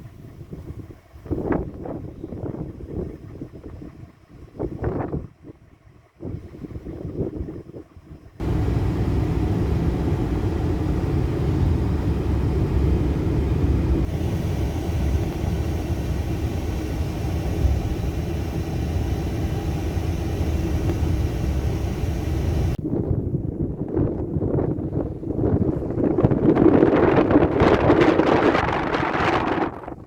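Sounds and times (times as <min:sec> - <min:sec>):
strong storm wind on microphone: 0:08.4 - 0:30.0.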